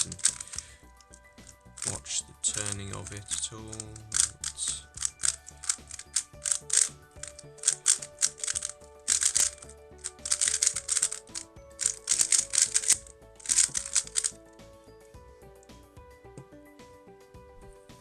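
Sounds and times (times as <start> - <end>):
puzzle cube pieces clacking: 0.0 - 14.4
background music: 0.0 - 18.0.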